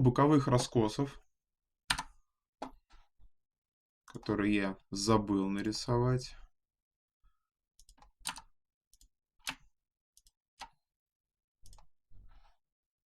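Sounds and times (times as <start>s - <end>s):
computer mouse clicks: 1.9s - 2.8s, 7.8s - 10.8s, 11.7s - 11.9s.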